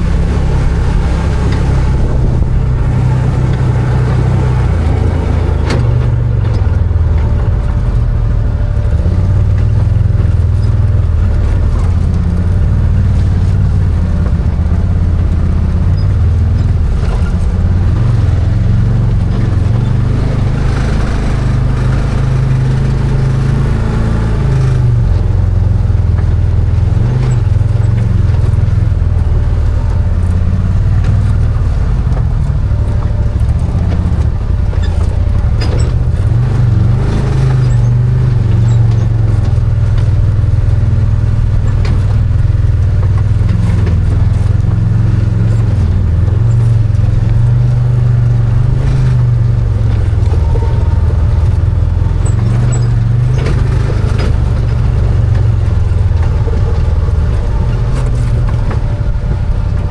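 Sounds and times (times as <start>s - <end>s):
sharp clicks and knocks: 0.0s - 8.9s, 25.1s - 59.9s
off-road vehicle engine revving: 0.0s - 59.9s.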